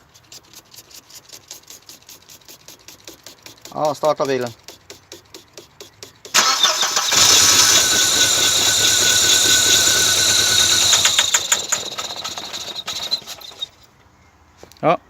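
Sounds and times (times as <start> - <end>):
car engine cranking and running: 6.4 - 13.8.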